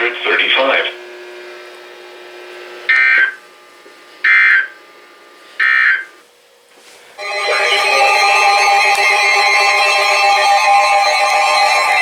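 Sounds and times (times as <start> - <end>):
music: 7.2 - 12.0.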